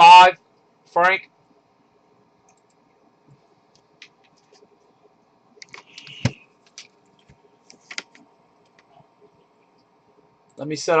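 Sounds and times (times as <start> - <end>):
keyboard and mouse clicking: 2.4 - 2.8, 5.6 - 8.9.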